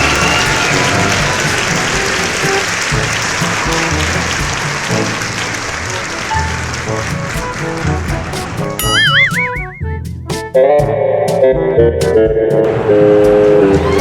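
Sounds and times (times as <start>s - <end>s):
comic music with bouncing bass: 0.0s - 5.5s, 6.4s - 14.0s
applause-like rushing noise: 0.0s - 9.7s, 12.7s - 14.0s.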